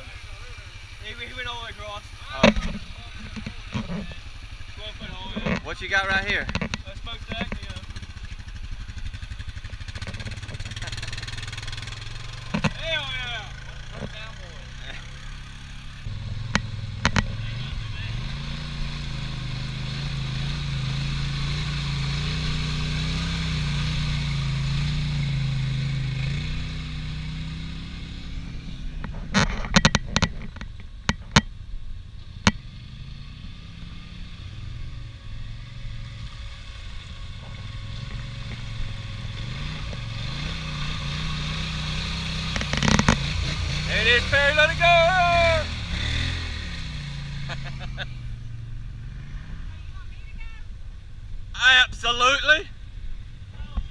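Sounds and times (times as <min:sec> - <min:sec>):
off-road vehicle engine revving: 0:00.0 - 0:53.9.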